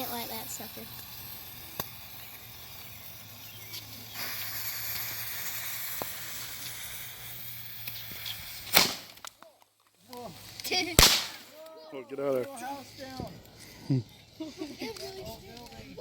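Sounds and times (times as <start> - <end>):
fireworks and cardboard hissing: 0.0 - 16.0
faint pops: 7.8 - 11.7.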